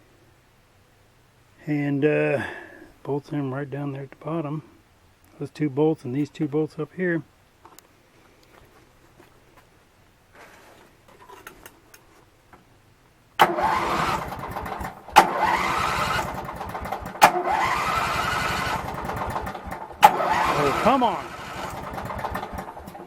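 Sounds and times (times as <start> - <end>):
engine cranking: 13.4 - 23.0.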